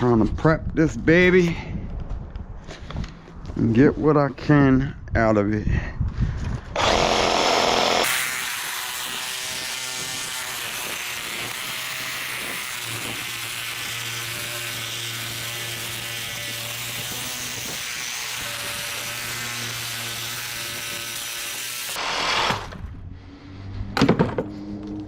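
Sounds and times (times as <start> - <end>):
reciprocating saw cutting metal tubing: 6.8 - 22.8.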